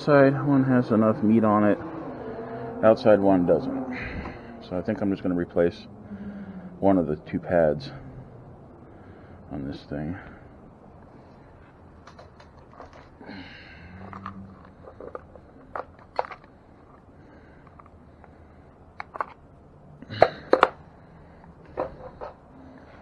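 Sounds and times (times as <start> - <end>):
clicks and knocks of tools: 19.0 - 19.4.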